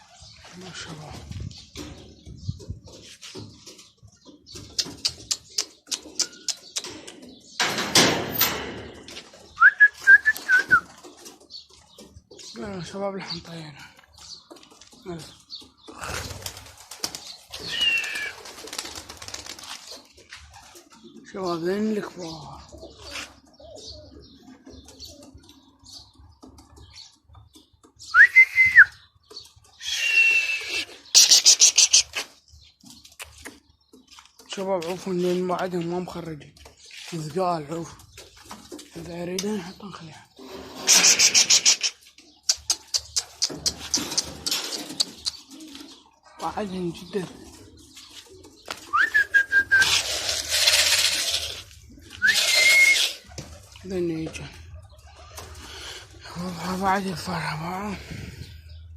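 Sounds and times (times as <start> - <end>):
pigeon wings flapping: 16.0 - 20.0
person whistling: 28.1 - 28.9, 48.9 - 49.9, 52.2 - 53.1.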